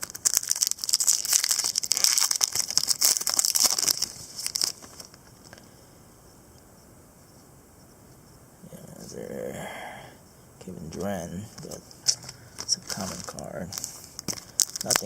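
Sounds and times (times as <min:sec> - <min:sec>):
plastic wrapper crinkling: 0:00.0 - 0:05.7, 0:11.0 - 0:15.0.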